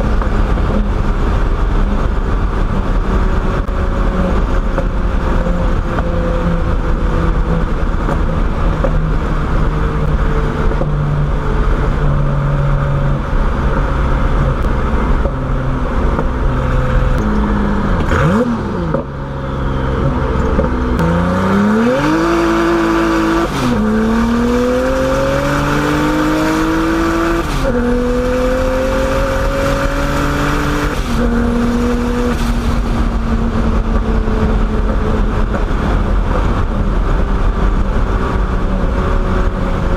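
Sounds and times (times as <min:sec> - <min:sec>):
car engine revving and upshifting: 0:00.0 - 0:39.9.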